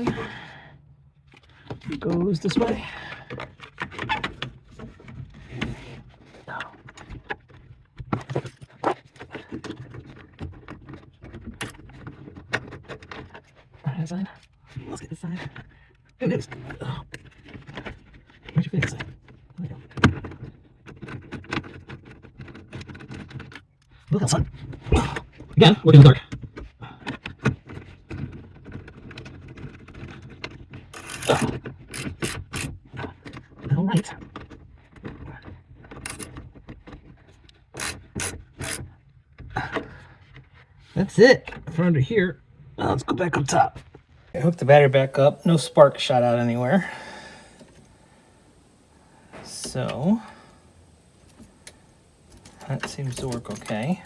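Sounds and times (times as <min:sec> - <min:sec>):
parts clicking and rattling: 0:27.2 - 0:38.9, 0:44.4 - 0:54.0
clicks and rubbing of tools: 0:44.4 - 0:54.0
steady low hum: 0:44.4 - 0:54.0.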